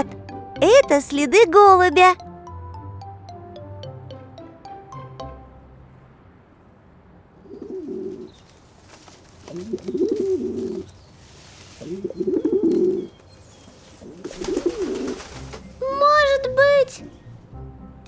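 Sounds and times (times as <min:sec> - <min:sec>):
pigeon cooing: 0:09.5 - 0:10.9, 0:14.2 - 0:15.4.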